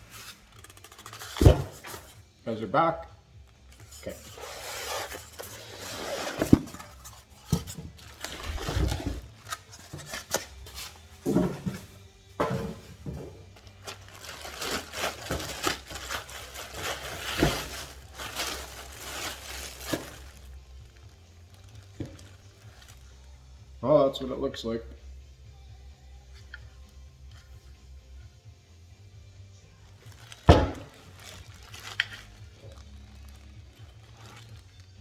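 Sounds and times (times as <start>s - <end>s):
packaging rustling and scraping: 0.0s - 2.2s, 3.7s - 23.1s, 29.9s - 35.0s.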